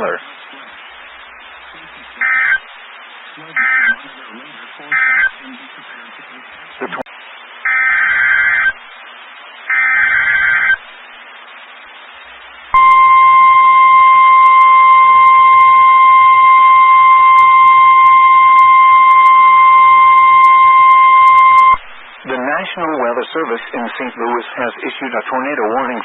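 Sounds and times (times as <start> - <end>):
steady alert tone: 12.8 - 21.8.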